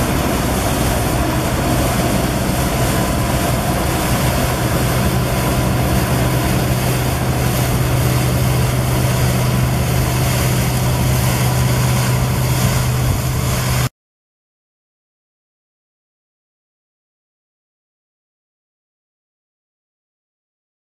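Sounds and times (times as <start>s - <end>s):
combine harvester running: 0.0s - 13.9s.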